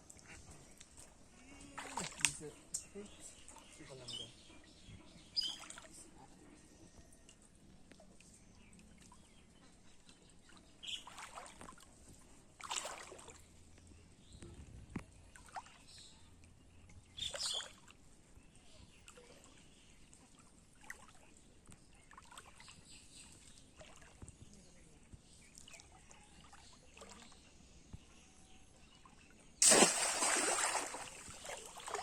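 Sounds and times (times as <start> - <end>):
water splashing and sloshing: 1.7 - 2.5, 10.4 - 13.6, 23.4 - 24.3, 29.6 - 32.0.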